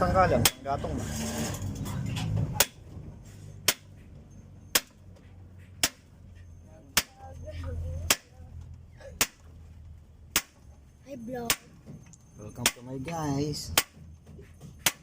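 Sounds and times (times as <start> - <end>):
hammer striking wooden block: 0.4 - 0.7, 2.6 - 2.8, 3.6 - 4.0, 4.7 - 5.0, 5.8 - 6.1, 6.9 - 7.2, 10.3 - 10.6, 12.6 - 12.9, 13.7 - 14.0, 14.7 - 15.0.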